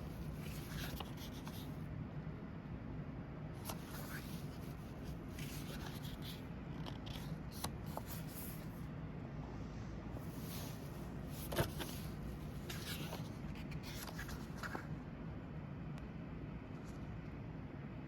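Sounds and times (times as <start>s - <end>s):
paper pages turning: 0.0s - 1.8s, 3.6s - 8.8s, 10.2s - 14.9s
steady low hum: 0.0s - 18.0s.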